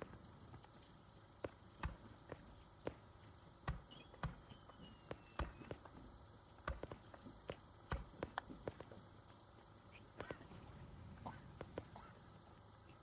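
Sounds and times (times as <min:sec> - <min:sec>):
faint whistling tone: 0:03.9 - 0:05.7.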